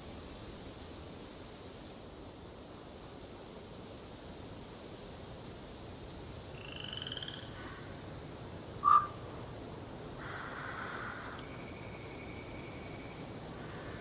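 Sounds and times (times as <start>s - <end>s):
forest background hiss: 0.0s - 14.0s
bird trill: 6.6s - 7.6s, 8.8s - 9.2s
sharp loud bird call: 8.8s - 9.2s
wild birds calling: 8.8s - 9.4s, 10.2s - 14.0s.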